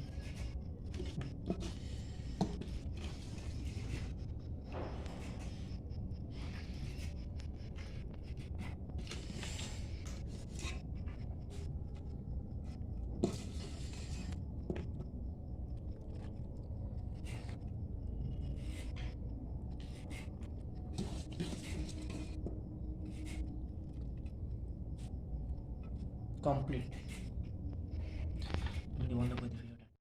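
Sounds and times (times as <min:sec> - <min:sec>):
steady low rumble: 0:00.0 - 0:29.9.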